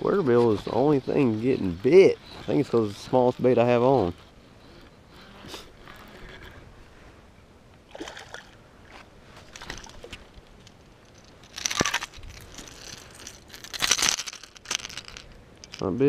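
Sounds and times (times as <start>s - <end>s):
fish thrashing in water: 7.9s - 14.4s.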